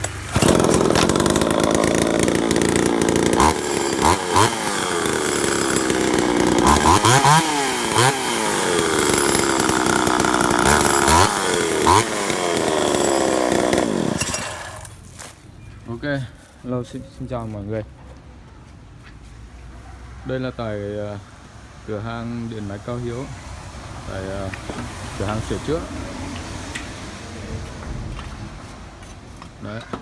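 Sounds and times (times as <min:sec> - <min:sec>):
two-stroke engine revving: 0:00.0 - 0:14.9.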